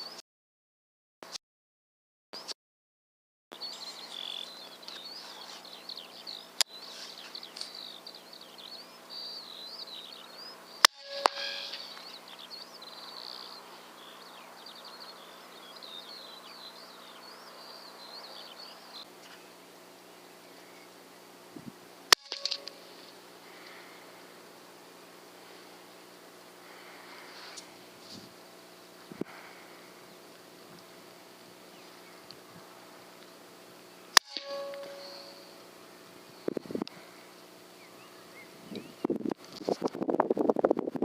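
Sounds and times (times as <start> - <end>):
birds singing: 3.5 - 39.4
sharp click: 22.1 - 22.8, 34.2 - 35.2.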